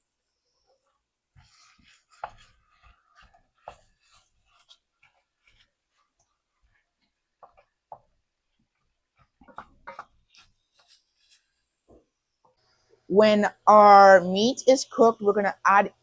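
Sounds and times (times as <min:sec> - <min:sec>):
utensil scraping a skillet: 0:00.6 - 0:07.7.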